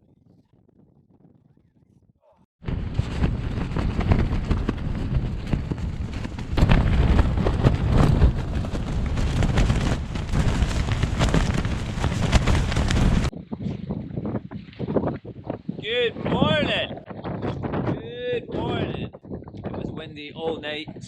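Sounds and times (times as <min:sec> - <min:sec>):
wind rumble on microphone: 0:00.0 - 0:21.0
tent fabric flapping: 0:02.6 - 0:13.4.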